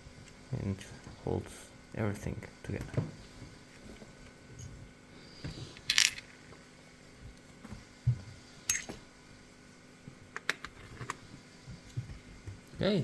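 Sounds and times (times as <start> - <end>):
small metal parts clinking: 5.8 - 6.3, 8.7 - 9.0.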